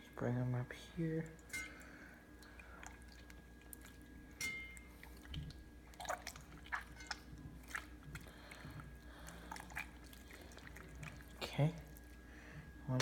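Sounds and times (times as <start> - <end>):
slime squelching by hand: 2.3 - 12.3.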